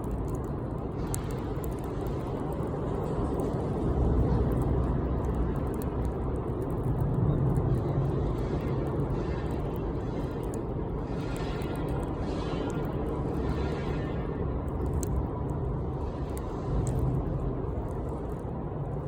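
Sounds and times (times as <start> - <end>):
bonfire rushing: 0.0 - 19.0
fire crackling: 0.0 - 19.0.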